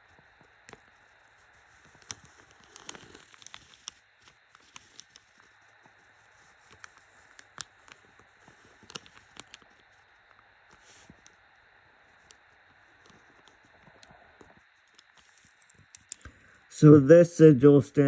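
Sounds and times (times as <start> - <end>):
pen tapping and scratching paper: 1.7 - 6.0, 6.6 - 9.7.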